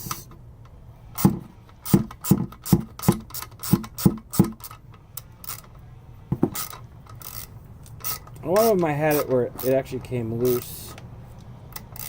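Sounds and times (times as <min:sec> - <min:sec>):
hammer knocking on metal: 0:06.3 - 0:06.6.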